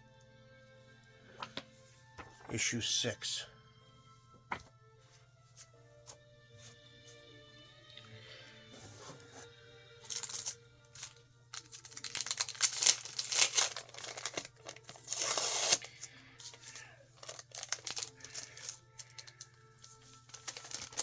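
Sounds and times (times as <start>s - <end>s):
packaging being torn and crinkled: 10.0s - 21.0s.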